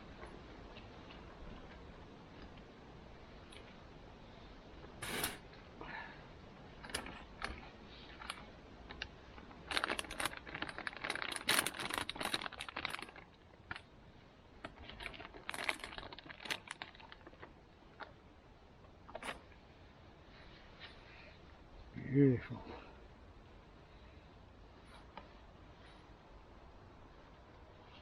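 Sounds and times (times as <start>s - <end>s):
gear clicking and rustling: 6.8s - 13.9s, 14.6s - 18.2s.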